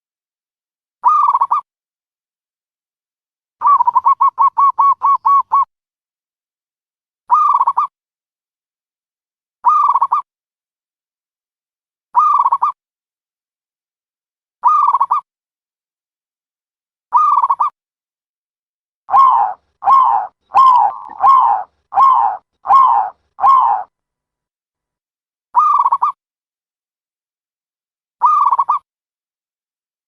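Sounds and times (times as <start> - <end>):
dove cooing: 19.1 - 23.9.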